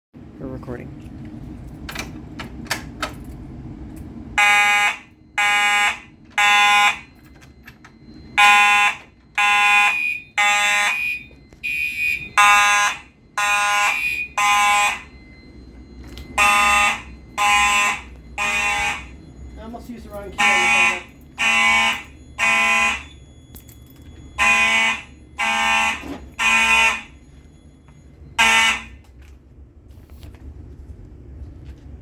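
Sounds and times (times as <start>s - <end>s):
fire alarm horn blasts: 4.3s - 29.3s.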